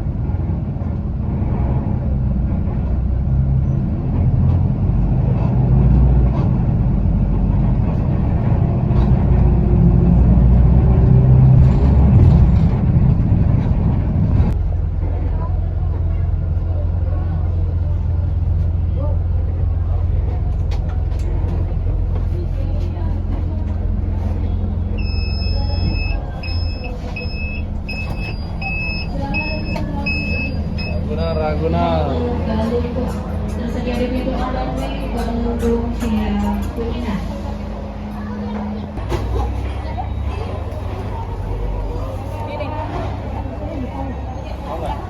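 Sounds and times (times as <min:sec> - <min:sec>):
bus engine and road rumble: 0:00.0 - 0:45.0
high-pitched electronic warning beeps: 0:25.0 - 0:31.6.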